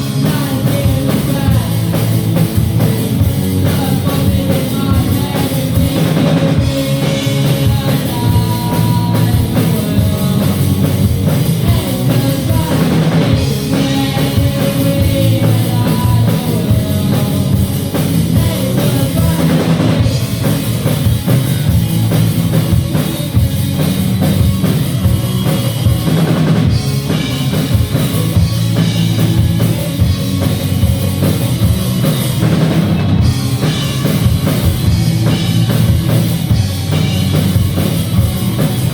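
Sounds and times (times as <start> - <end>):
bass drum: 0.0 - 38.9
live rock band playing: 0.0 - 38.9.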